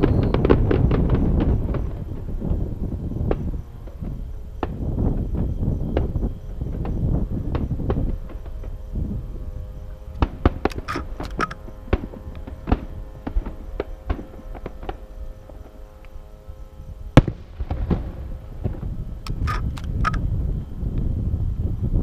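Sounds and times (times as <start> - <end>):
firework bangs: 0.0 - 8.8, 10.2 - 15.7, 17.2 - 20.2.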